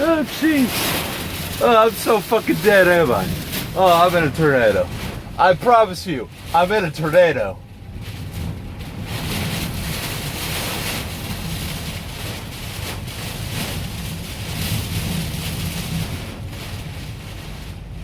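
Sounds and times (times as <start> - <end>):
low rumble: 0.0 - 18.0
rain beating on truck cab: 0.0 - 18.0
storm wind gusting: 0.0 - 18.0.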